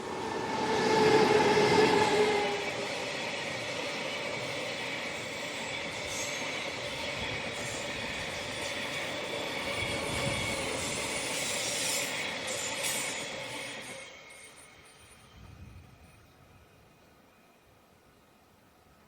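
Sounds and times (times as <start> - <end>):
train wheels rumbling on rails: 0.0 - 17.1
high-pitched wheel squeal: 5.2 - 15.6.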